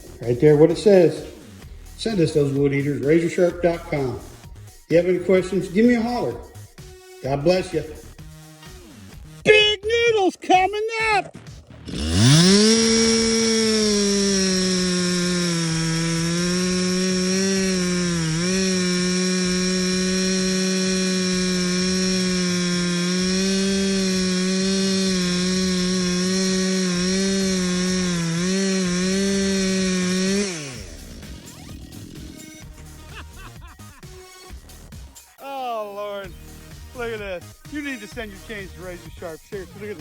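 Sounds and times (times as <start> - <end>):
chainsaw cutting wood: 0.0 - 10.1, 11.3 - 35.2, 36.3 - 40.0.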